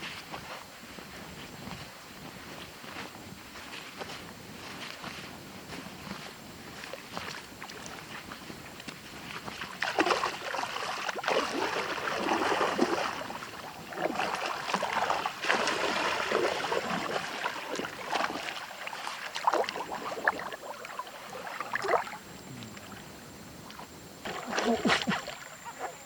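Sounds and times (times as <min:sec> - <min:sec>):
water sloshing and splashing: 0:06.0 - 0:26.0.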